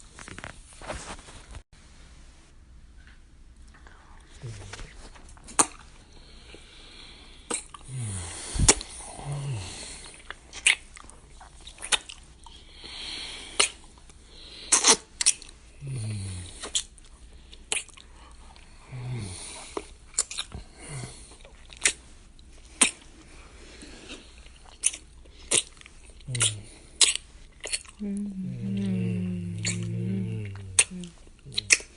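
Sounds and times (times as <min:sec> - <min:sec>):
breathing: 0:06.1 - 0:10.2
wet lip smacks kissing: 0:10.6 - 0:10.8, 0:11.8 - 0:12.2, 0:13.6 - 0:13.8, 0:14.7 - 0:15.4, 0:17.7 - 0:18.0, 0:21.8 - 0:22.0, 0:24.8 - 0:25.7, 0:26.3 - 0:27.9, 0:30.8 - 0:31.9
short low hums: 0:28.0 - 0:31.7.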